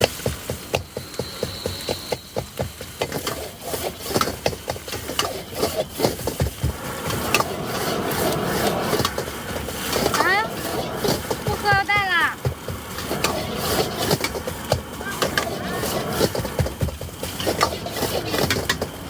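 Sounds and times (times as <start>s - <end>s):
metal spatula scraping a wok: 3.2s - 11.8s, 12.9s - 19.0s
rushing noise: 4.9s - 19.0s.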